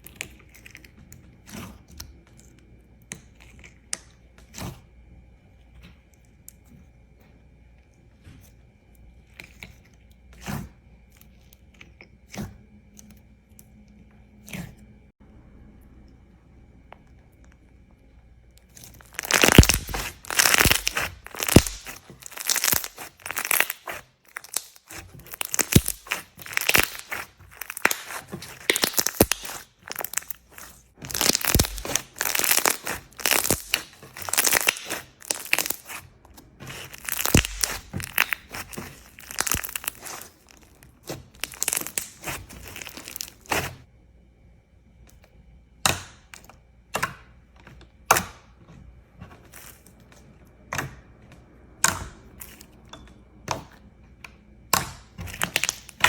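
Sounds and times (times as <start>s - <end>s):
slime crackling and crunching: 18.6s - 43.9s, 55.2s - 56.0s.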